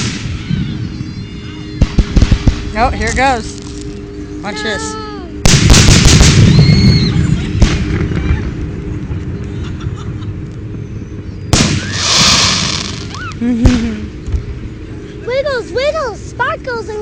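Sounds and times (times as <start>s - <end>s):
fireworks booming: 0.0s - 0.9s, 1.8s - 3.0s, 5.4s - 9.2s, 11.5s - 14.4s
fireworks hissing crackle: 11.5s - 14.0s.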